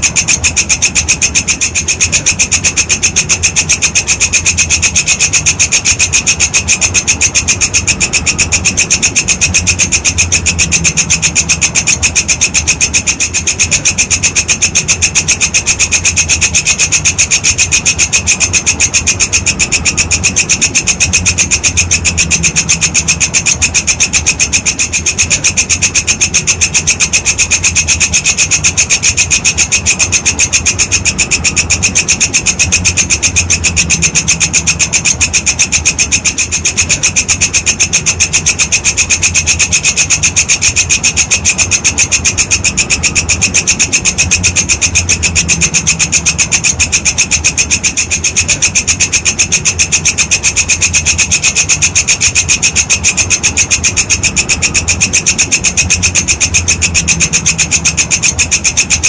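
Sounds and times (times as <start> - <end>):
grasshopper stridulating: 0.0 - 59.0
low hum: 0.0 - 59.0.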